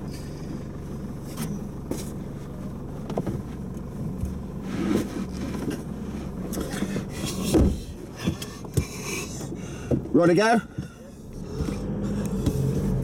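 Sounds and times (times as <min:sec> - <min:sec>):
engine running low: 0:00.0 - 0:13.0
knocks and clunks: 0:06.5 - 0:12.8.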